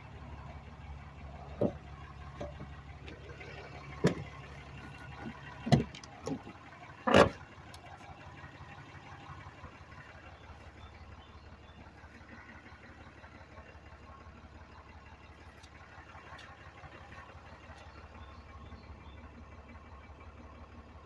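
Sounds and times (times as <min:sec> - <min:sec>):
pickup engine idling: 0:00.0 - 0:21.0
sharp knocks and thumps: 0:01.5 - 0:02.7, 0:04.0 - 0:04.4, 0:05.1 - 0:07.4.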